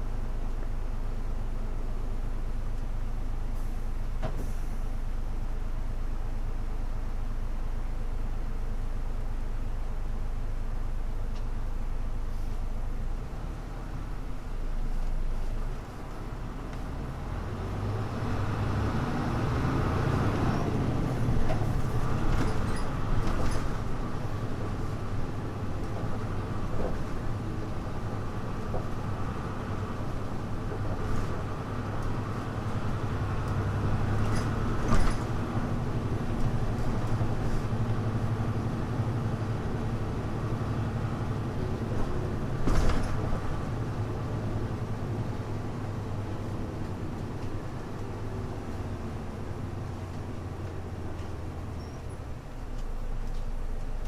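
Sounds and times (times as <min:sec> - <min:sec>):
muffled bus engine drone: 0:00.0 - 0:54.0
bus body knocks and rattles: 0:20.6 - 0:39.0, 0:41.4 - 0:47.8.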